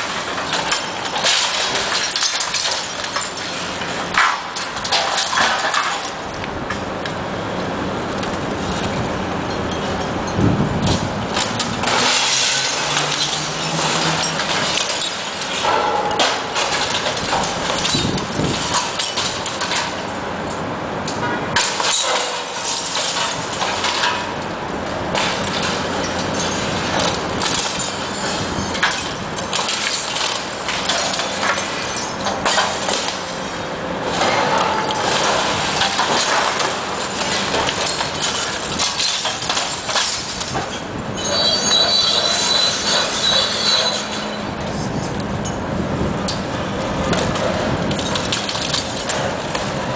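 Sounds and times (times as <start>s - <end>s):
falling bricks crashing: 0.0s - 6.2s, 10.9s - 20.1s, 21.6s - 24.3s, 25.1s - 33.3s, 34.1s - 41.0s.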